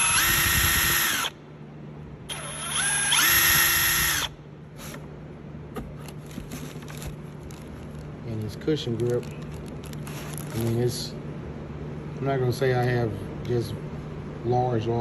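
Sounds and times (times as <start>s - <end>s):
impact wrench motor whine: 0.0s - 1.4s, 2.3s - 5.0s.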